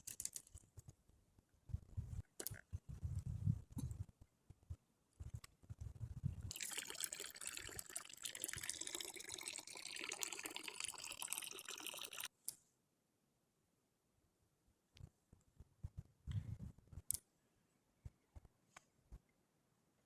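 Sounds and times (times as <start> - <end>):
liquid pouring into container: 6.5 - 12.3.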